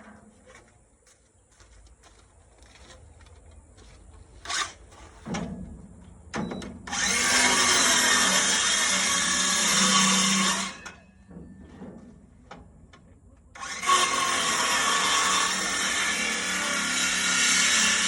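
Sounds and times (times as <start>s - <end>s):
power drill running: 6.9s - 10.9s, 13.6s - 18.0s.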